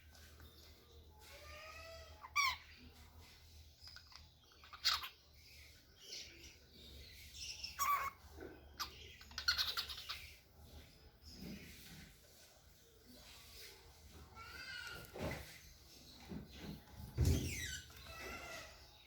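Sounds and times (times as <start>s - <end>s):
cockatiel chirping and squawking: 1.5s - 2.8s, 3.8s - 5.4s, 7.5s - 8.2s, 8.8s - 10.4s.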